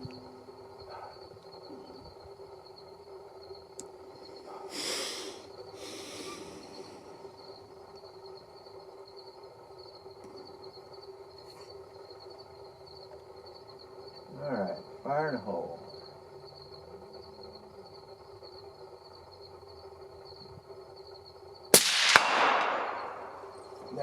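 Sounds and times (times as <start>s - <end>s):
insects chirring: 0.0s - 24.0s
breathy rustling hiss: 4.4s - 7.4s.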